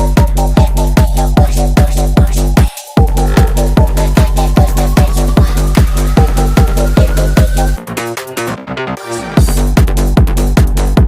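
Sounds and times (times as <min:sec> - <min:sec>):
kick drum beat: 0:00.0 - 0:07.8, 0:09.4 - 0:11.0
bass line: 0:00.0 - 0:11.0
rising synth sweep: 0:03.1 - 0:08.0.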